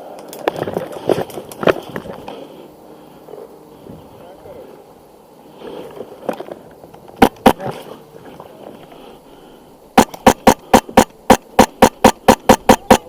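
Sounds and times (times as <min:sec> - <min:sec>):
airsoft rifle shots: 0:07.2 - 0:07.8, 0:10.0 - 0:13.0.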